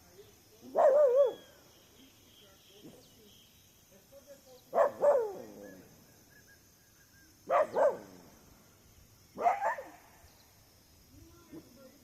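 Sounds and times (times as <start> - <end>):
dog barking: 0.7 - 1.4, 4.7 - 5.5, 7.5 - 8.2, 9.4 - 10.0.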